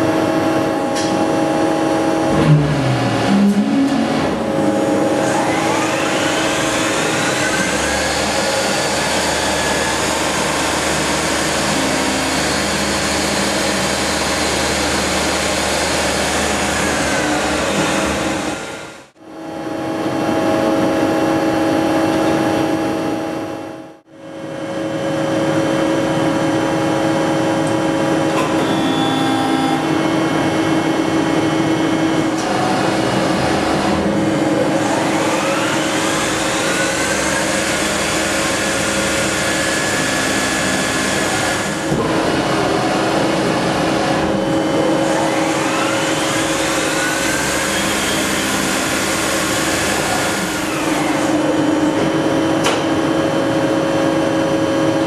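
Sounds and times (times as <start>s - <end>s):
machine tool humming: 1.6s - 19.1s, 27.6s - 53.3s.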